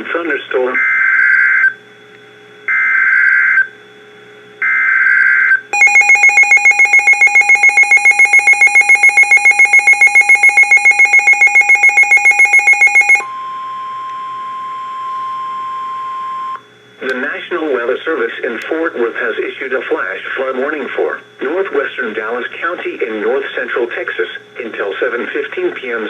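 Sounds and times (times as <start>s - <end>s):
rapid pulsing electronic alarm: 4.6s - 16.6s
steady warning tone: 5.8s - 16.6s.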